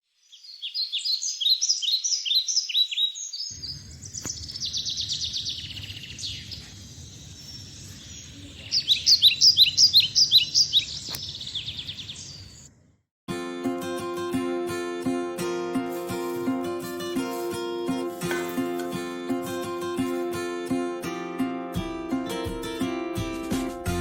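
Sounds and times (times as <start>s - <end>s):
birds chirping: 0.1s - 12.9s.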